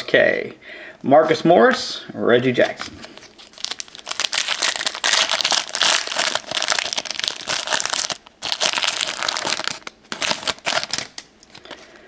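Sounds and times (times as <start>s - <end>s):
plastic wrapper crinkling: 2.6s - 11.8s.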